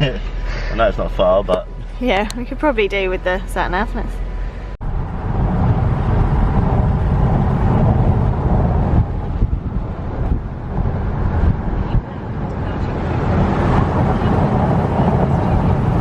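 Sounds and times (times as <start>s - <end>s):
road and engine rumble: 0.0s - 16.0s
wind rushing: 3.6s - 16.0s.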